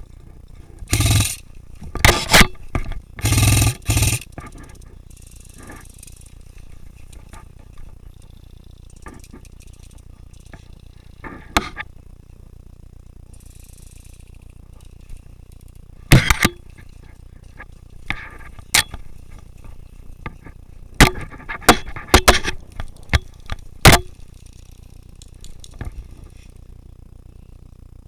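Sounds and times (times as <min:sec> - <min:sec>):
airsoft guns firing: 0:00.9 - 0:01.4, 0:03.2 - 0:04.4.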